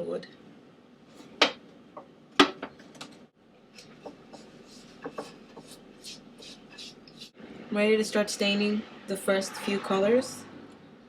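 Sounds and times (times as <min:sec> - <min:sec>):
hard objects knocking: 0:01.4 - 0:02.8, 0:05.0 - 0:05.7.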